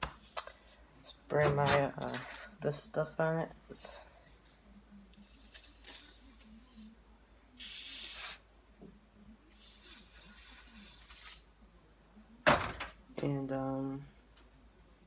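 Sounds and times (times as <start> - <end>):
aerosol can spraying: 7.6 - 8.4.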